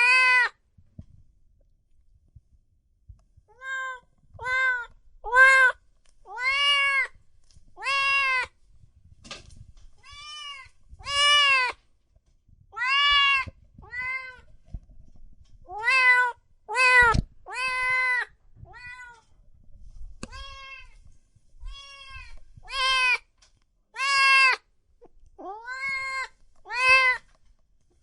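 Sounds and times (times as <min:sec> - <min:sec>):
cat meowing: 0:00.0 - 0:00.5, 0:03.5 - 0:07.2, 0:07.8 - 0:08.5, 0:10.0 - 0:11.8, 0:12.7 - 0:14.5, 0:15.7 - 0:19.3, 0:20.3 - 0:21.0, 0:21.6 - 0:23.2, 0:24.0 - 0:24.7, 0:25.4 - 0:27.3.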